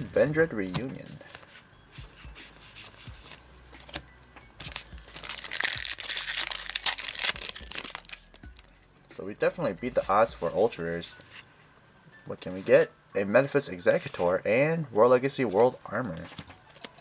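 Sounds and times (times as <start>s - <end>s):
cards and packaging handled: 0.6s - 8.7s, 15.4s - 17.0s
foil wrapper crinkling and tearing: 4.6s - 8.7s.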